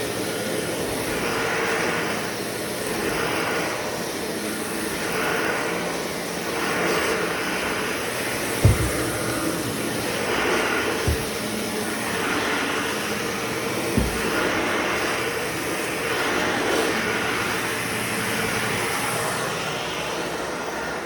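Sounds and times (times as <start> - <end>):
vacuum cleaner on a rug: 0.0 - 21.0
low thump: 8.6 - 11.6, 14.0 - 14.6.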